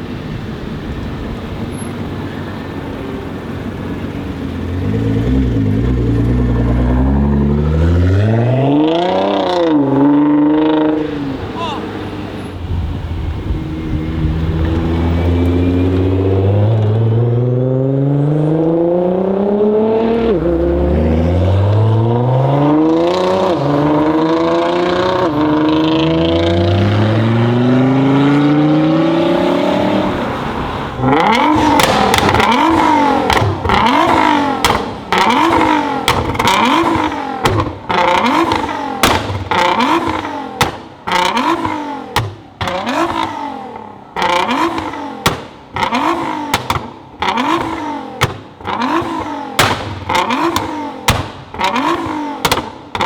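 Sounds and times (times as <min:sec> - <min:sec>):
car engine accelerating hard: 0:03.4 - 0:53.0
exhaust pops and bangs: 0:31.0 - 0:53.0.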